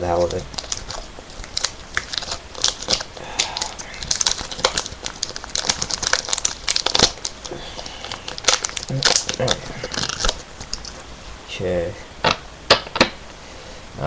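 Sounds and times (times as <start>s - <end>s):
plastic wrapper crinkling and tearing: 0.0s - 11.1s.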